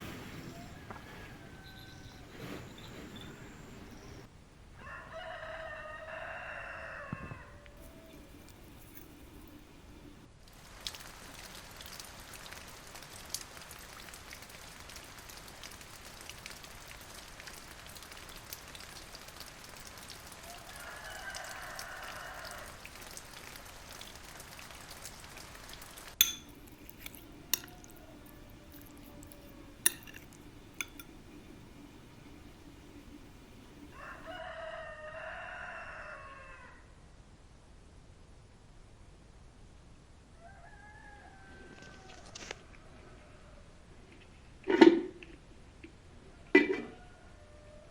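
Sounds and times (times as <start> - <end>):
rain pattering: 0.0 - 4.7, 7.6 - 34.4.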